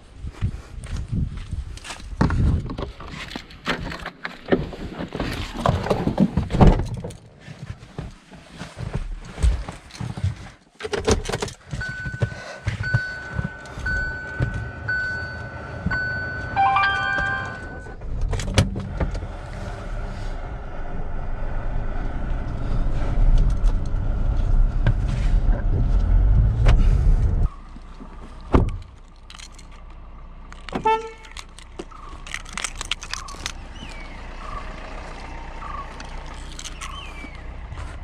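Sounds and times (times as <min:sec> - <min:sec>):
car engine rumbling: 0:11.1 - 0:38.0
car warning chime beeping: 0:11.8 - 0:18.0
short multi-tone chime: 0:16.0 - 0:17.9.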